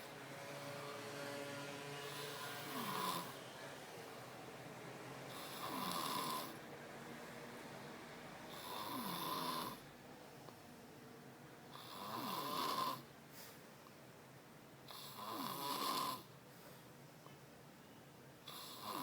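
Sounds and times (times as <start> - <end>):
person snoring: 2.0 - 3.4, 5.3 - 6.6.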